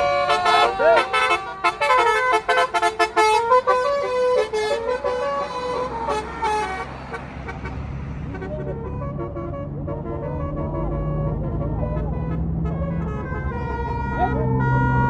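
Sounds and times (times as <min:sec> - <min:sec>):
bus engine low hum: 0:00.0 - 0:15.0
multi-tone bus horn tune: 0:00.0 - 0:15.0.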